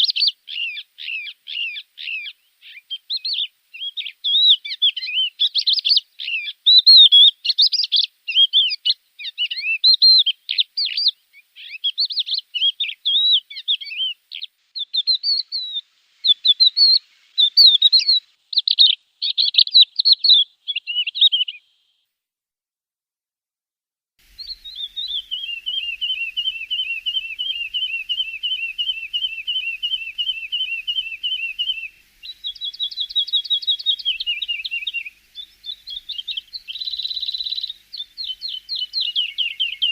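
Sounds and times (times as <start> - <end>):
lark singing chirping phrases: 0.0 - 21.9, 24.3 - 39.9
bird trilling: 24.4 - 39.9.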